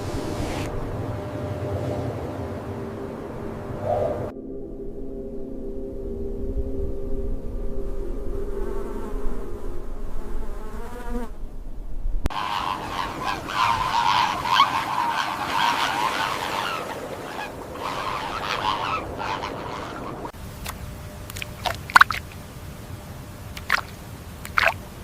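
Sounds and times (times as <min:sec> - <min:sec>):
soft sustained music tones: 0:00.7 - 0:10.7
flock of birds calling: 0:12.3 - 0:20.4.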